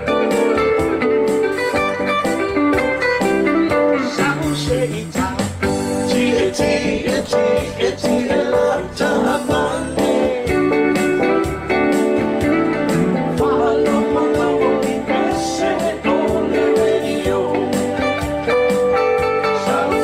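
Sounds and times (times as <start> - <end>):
strummed plucked strings: 0.0 - 16.8
person singing: 3.7 - 11.4, 12.3 - 20.0.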